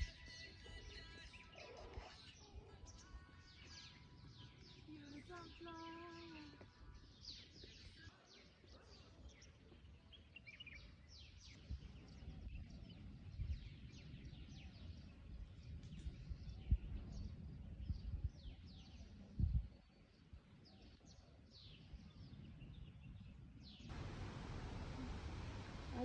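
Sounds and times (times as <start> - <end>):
birds chirping: 0.0 - 26.0
faint low rumble: 22.3 - 26.0.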